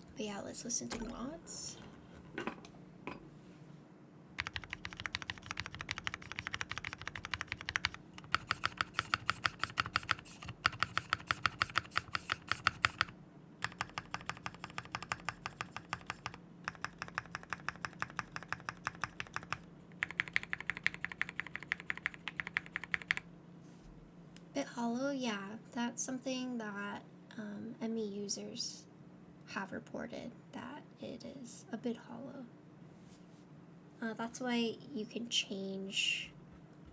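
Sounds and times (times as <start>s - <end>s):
mechanical keyboard typing: 4.4s - 23.2s.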